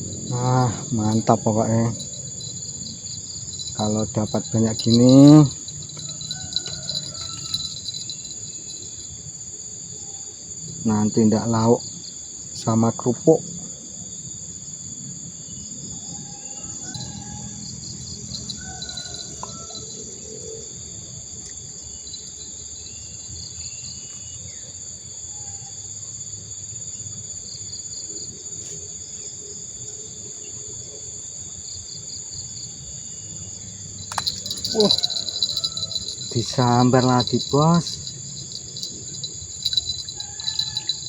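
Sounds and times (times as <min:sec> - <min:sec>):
insect pulsed chirps: 0:00.0 - 0:09.1, 0:16.9 - 0:19.5, 0:34.0 - 0:41.0
insects trilling: 0:00.0 - 0:13.4, 0:16.3 - 0:20.0, 0:27.3 - 0:41.0.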